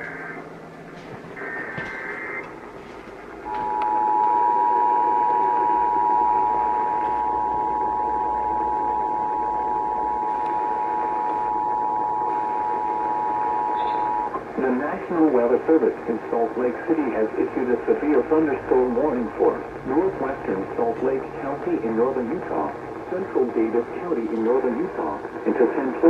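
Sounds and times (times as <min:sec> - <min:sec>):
radio static: 0:01.3 - 0:26.0
steady two-tone attention signal: 0:03.4 - 0:15.8
warbling data screech: 0:11.1 - 0:14.3.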